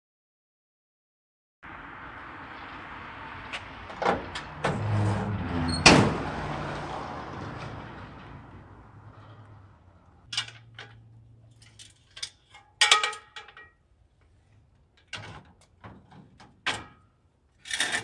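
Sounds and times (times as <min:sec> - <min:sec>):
squeaky knock: 0:04.0 - 0:06.3.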